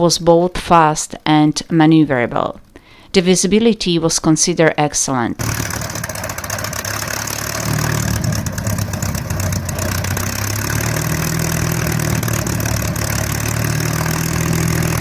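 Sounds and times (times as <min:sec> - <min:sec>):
piston aero engine running: 0:05.4 - 0:15.0.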